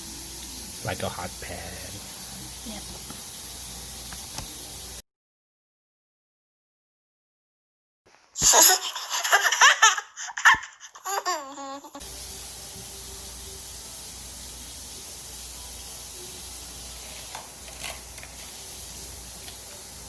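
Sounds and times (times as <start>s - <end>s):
steady hiss: 0.0s - 5.0s, 12.0s - 20.0s
small child laughing babble: 8.4s - 12.0s.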